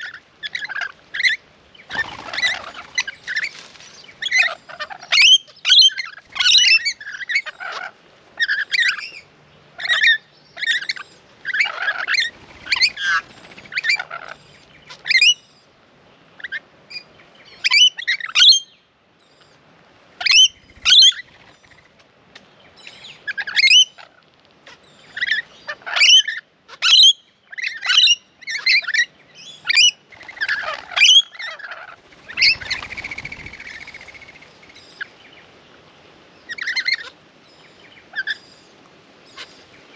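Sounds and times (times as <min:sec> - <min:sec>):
parrots screeching: 0:00.0 - 0:03.5, 0:04.2 - 0:09.1, 0:09.8 - 0:15.4, 0:20.2 - 0:21.2, 0:25.2 - 0:34.4.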